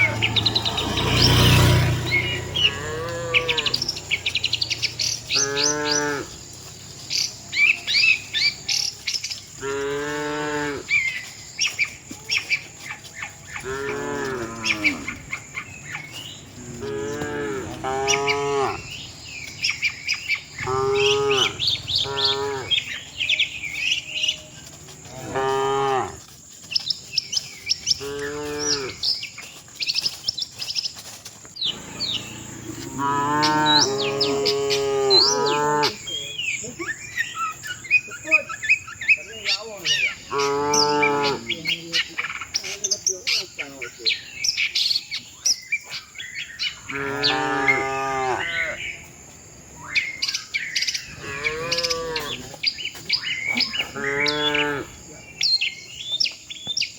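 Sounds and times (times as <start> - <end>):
cattle mooing: 0.0 - 6.5, 9.6 - 11.1, 13.5 - 19.2, 20.5 - 26.2, 28.0 - 29.0, 31.7 - 36.3, 39.9 - 42.0, 46.8 - 49.1, 51.0 - 52.6, 53.3 - 55.4
small birds chirping: 0.0 - 56.9.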